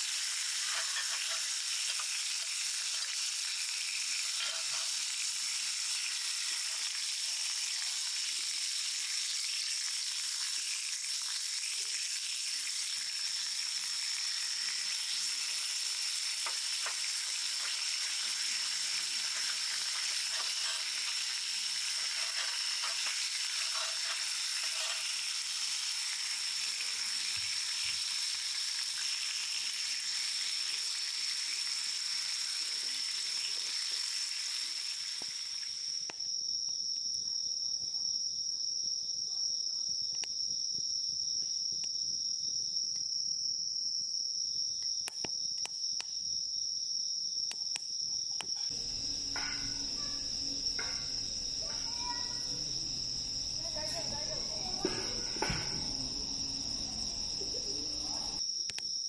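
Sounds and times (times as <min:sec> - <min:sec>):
food sizzling: 0:00.0 - 0:36.1, 0:48.7 - 0:58.4
crickets chirping: 0:00.1 - 0:08.3, 0:12.2 - 0:29.1, 0:32.0 - 0:59.0.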